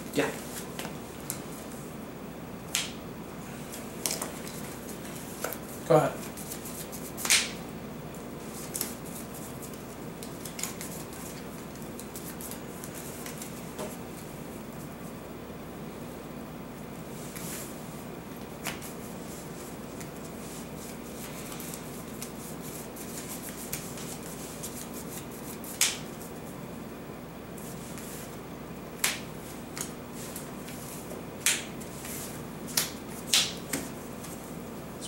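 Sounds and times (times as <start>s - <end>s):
low room hum: 0.0s - 35.0s.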